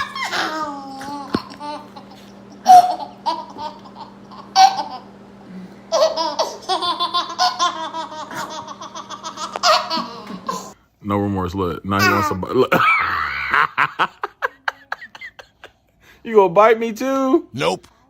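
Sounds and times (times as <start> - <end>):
baby laughing: 0.0 - 5.1, 5.9 - 10.8, 12.0 - 13.6.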